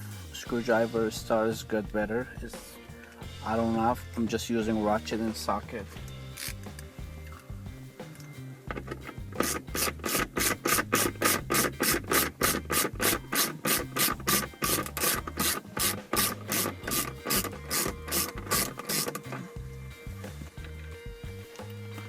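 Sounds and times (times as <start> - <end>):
hand ratchet clicking: 8.1 - 19.5.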